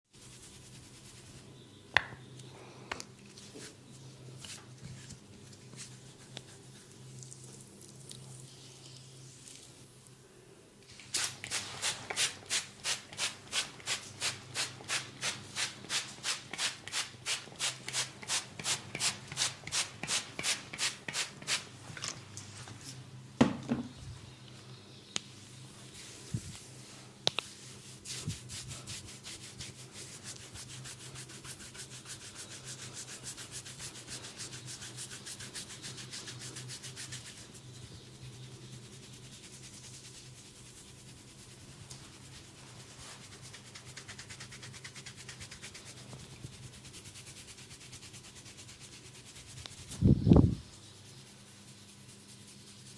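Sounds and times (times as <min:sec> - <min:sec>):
hands rubbing skin: 0:04.4 - 0:07.6, 0:25.9 - 0:52.9.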